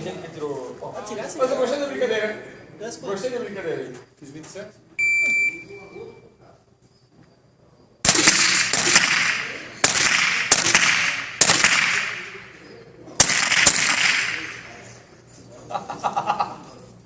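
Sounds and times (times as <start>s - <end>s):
rifle shots with echo: 8.0s - 12.6s, 13.2s - 14.9s.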